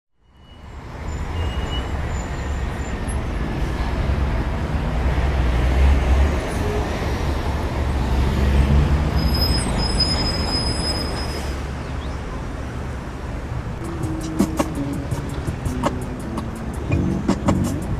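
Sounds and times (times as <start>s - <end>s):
road noise: 0.2s - 17.9s
vehicle engine rumble: 12.6s - 17.9s.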